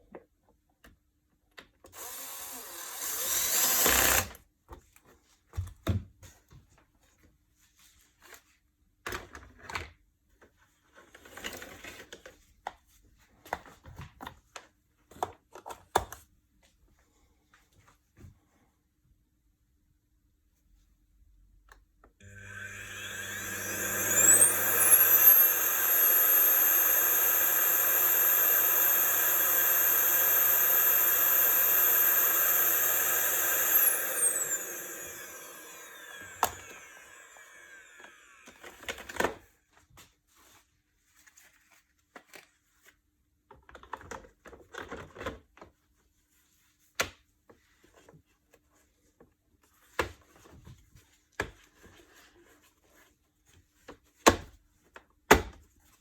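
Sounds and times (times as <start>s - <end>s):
vacuum cleaner whining: 1.9s - 4.3s, 22.2s - 39.1s.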